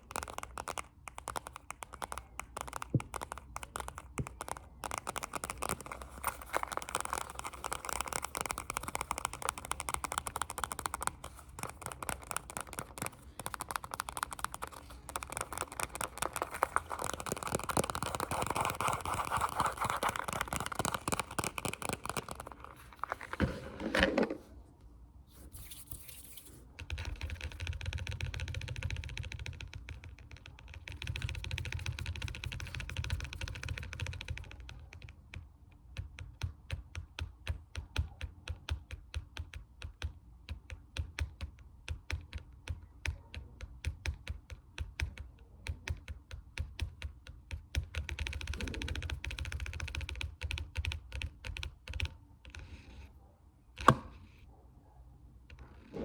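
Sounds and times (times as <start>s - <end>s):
fingertip and nail tapping: 0.0s - 22.4s.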